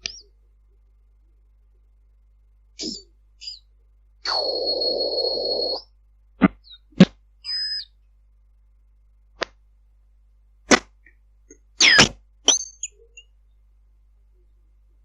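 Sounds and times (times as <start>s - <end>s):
steady high beep: 4.3s - 5.8s.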